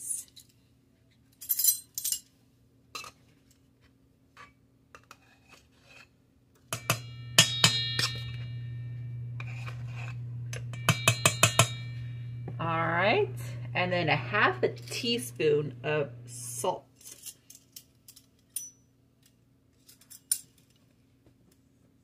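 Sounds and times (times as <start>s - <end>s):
metal spoon tapping a bowl: 6.7s - 8.5s, 10.6s - 12.0s
bowl ringing: 6.8s - 16.3s
steady low hum: 6.8s - 16.9s.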